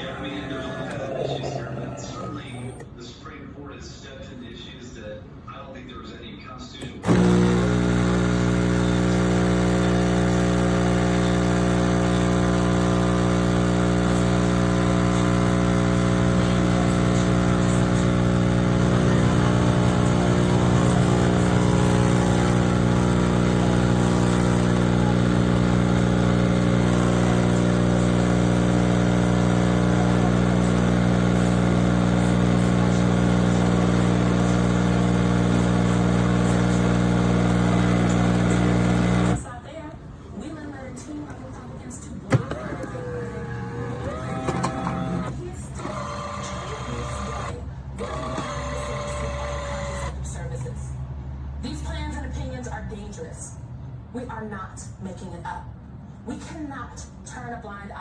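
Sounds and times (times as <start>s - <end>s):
loud mechanical drone: 7.0s - 39.4s.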